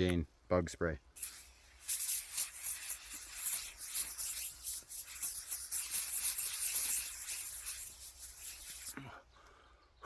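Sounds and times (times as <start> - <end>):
spray can hissing: 1.2 - 9.1.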